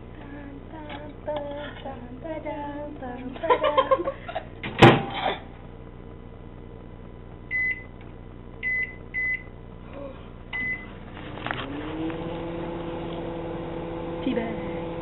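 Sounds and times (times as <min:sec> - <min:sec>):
microwave oven humming: 0:00.0 - 0:15.0
microwave keypad beeping: 0:07.5 - 0:07.9, 0:08.6 - 0:09.5, 0:10.6 - 0:10.9.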